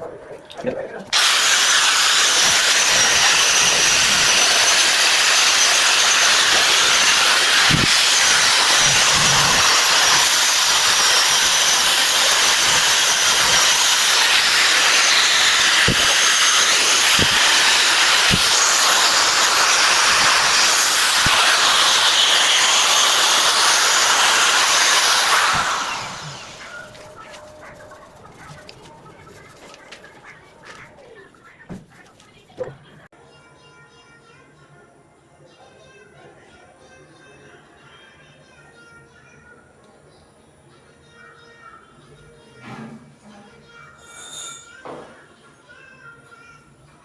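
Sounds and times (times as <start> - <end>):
welding arc crackling hiss: 1.1 - 28.9
sharp welding pops: 12.8 - 21.4.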